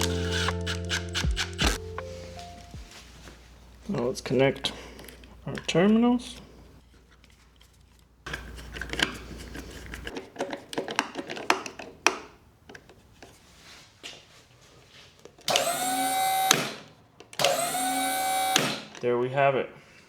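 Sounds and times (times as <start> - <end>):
electric pump motor whining: 0.0 - 2.0, 15.5 - 19.0.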